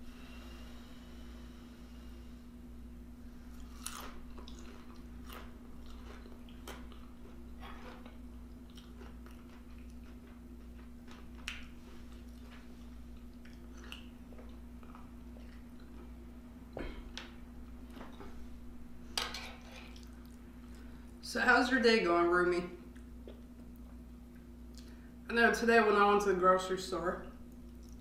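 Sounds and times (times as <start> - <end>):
low electrical hum: 0.0 - 28.0
person chewing and biting: 3.5 - 16.1.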